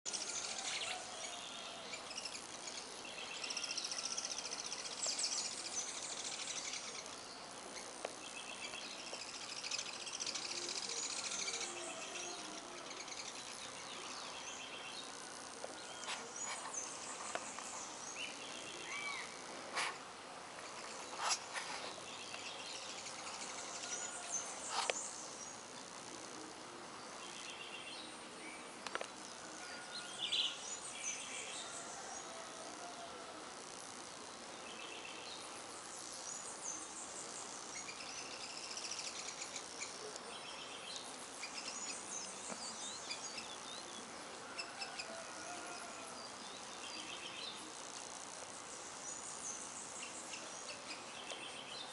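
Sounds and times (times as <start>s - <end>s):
birds singing and calling: 0.1s - 19.5s, 34.6s - 47.7s, 48.5s - 51.9s
faint buzz of bees: 0.1s - 51.9s.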